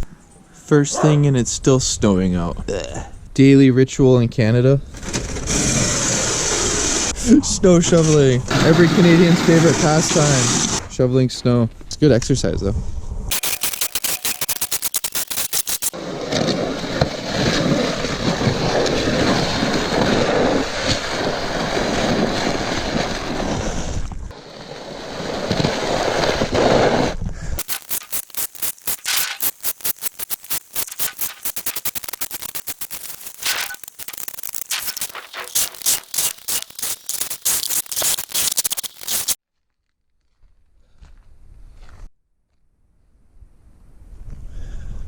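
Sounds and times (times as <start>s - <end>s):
rapid stuttering clicks: 13.3s - 16.0s, 27.6s - 39.4s
snow shovel scraping pavement: 16.0s - 27.1s.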